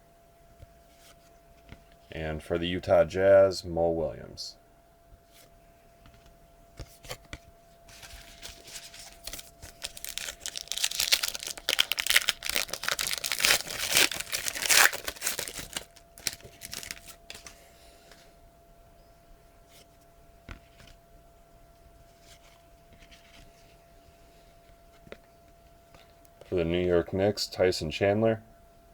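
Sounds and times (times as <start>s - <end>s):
wrapper tearing and crinkling: 8.0s - 17.5s.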